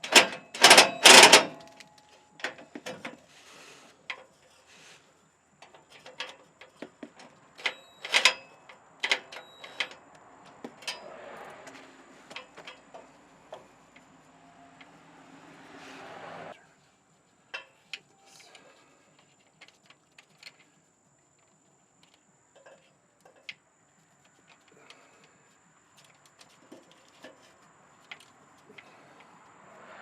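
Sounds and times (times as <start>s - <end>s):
hand tools clicking and tapping: 5.6s - 14.2s, 24.2s - 29.6s.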